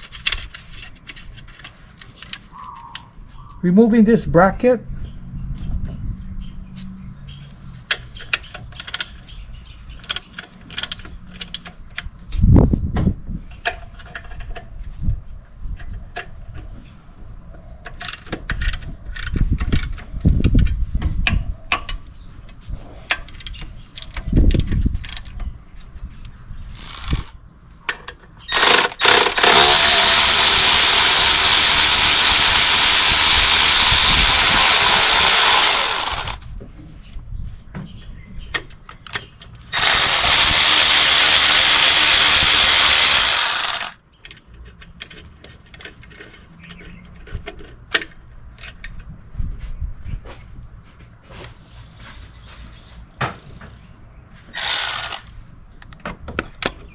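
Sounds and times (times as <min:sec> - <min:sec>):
cordless ratchet running: 0:26.7 - 0:27.3, 0:28.5 - 0:36.4, 0:39.8 - 0:44.0, 0:54.6 - 0:55.3
hand tools clicking and knocking: 0:27.9 - 0:36.4, 0:38.6 - 0:49.0, 0:54.6 - 0:56.8.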